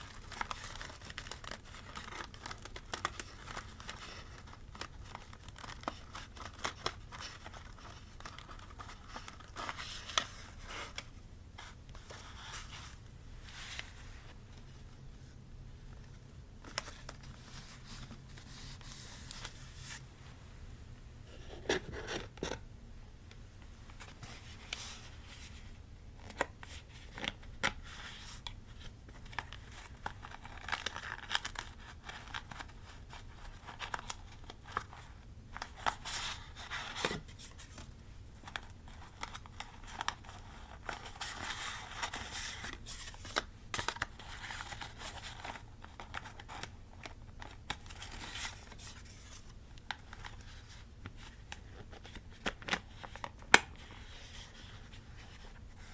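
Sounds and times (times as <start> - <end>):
paper rustling and tearing: 0.0 - 11.0.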